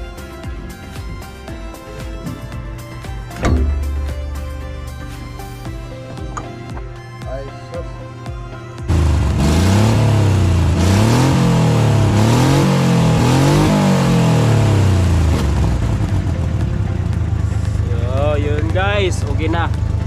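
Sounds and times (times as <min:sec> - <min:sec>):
small engine revving and idling: 0:08.8 - 0:20.0.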